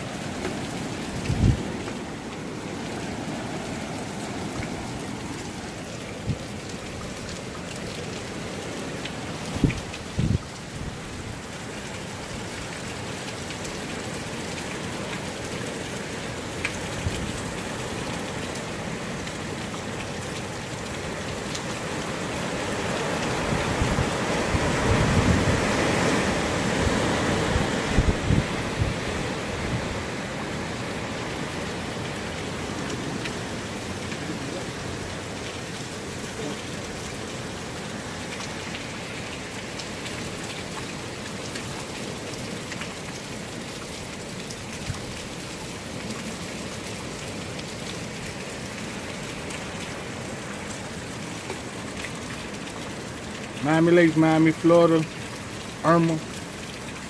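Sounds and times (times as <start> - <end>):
hurricane wind: 0.0 - 42.4
driving rain: 0.0 - 57.0.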